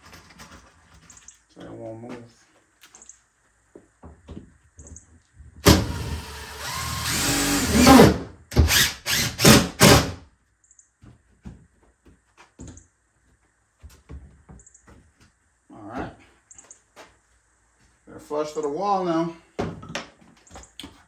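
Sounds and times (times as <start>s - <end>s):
power drill driving a screw: 5.6s - 10.2s.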